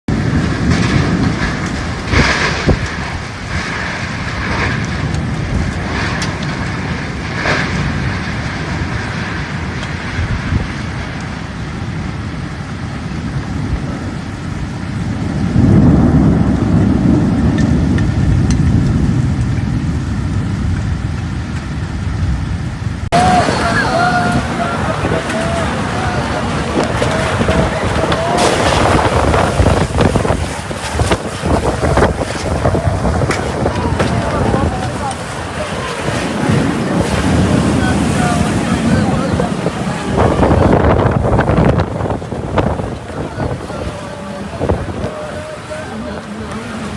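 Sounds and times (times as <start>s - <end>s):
heavy rain: 0.0s - 46.9s
low thunder rumble: 0.1s - 46.9s
wind gusts: 0.1s - 46.9s.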